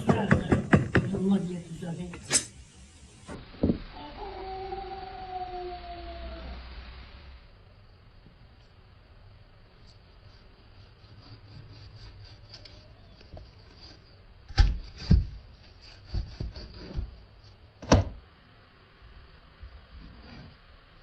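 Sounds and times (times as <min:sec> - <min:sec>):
dull knocks and thumps: 0:00.0 - 0:01.4, 0:14.5 - 0:18.2.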